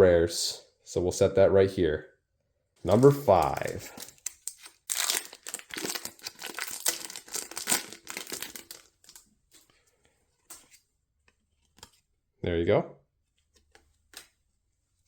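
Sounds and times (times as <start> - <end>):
foil wrapper crinkling and tearing: 2.9 - 9.3.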